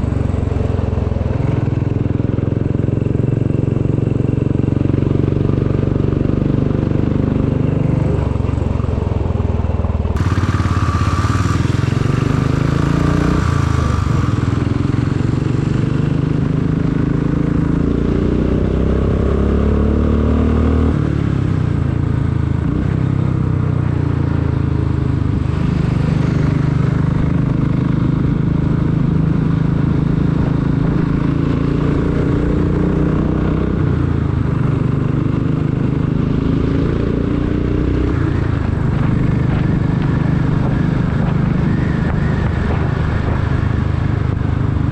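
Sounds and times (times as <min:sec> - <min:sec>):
motorcycle engine accelerating: 0:00.0 - 0:44.9
hiss: 0:10.2 - 0:14.8.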